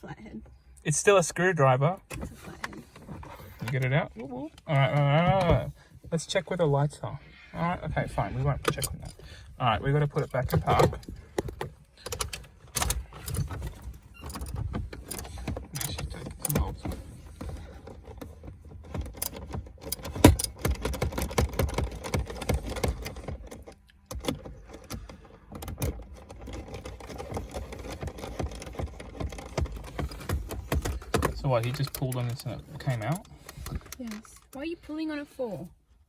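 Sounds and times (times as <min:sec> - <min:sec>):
clicks and rattles of plastic trim: 0:10.0 - 0:34.5.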